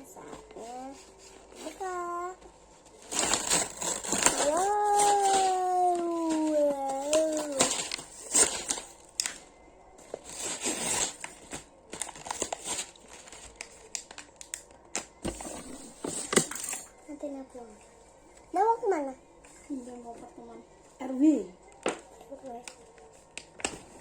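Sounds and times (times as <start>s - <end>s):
plastic packaging crinkling and tearing: 2.9s - 9.5s, 10.1s - 16.6s.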